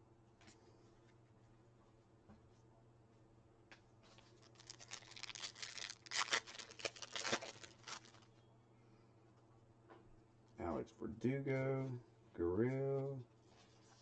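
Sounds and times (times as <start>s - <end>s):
wrapper tearing and crinkling: 4.2s - 8.3s.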